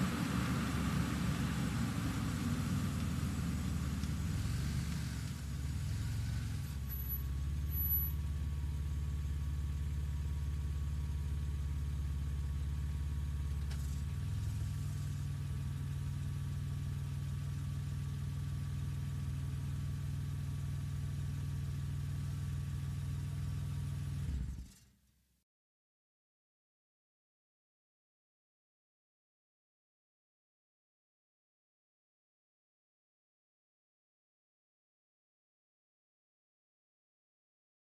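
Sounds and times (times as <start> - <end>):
car engine idling: 0.0 - 24.8.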